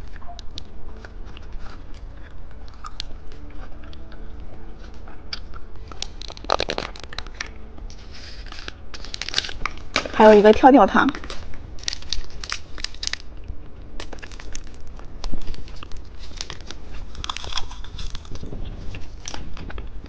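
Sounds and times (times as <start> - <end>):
plastic packaging crinkling: 5.8 - 20.0.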